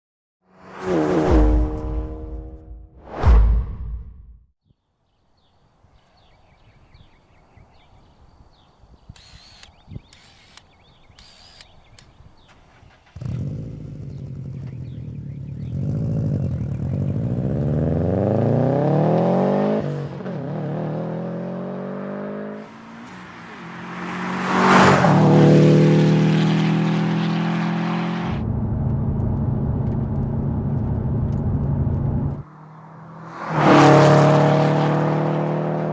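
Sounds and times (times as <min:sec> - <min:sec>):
car engine revving: 0:00.5 - 0:03.2, 0:16.9 - 0:35.9
brief loud sound: 0:00.8 - 0:04.4.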